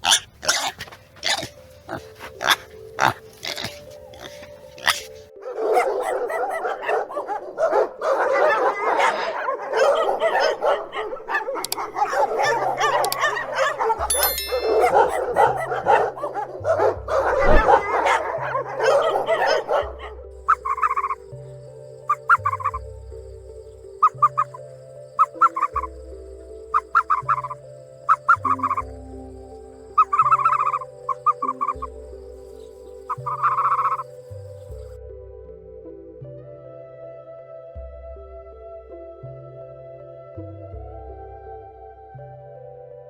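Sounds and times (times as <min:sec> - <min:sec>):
dogs barking and yelping: 0:00.0 - 0:22.9, 0:23.9 - 0:26.0, 0:26.6 - 0:29.0, 0:29.8 - 0:35.0.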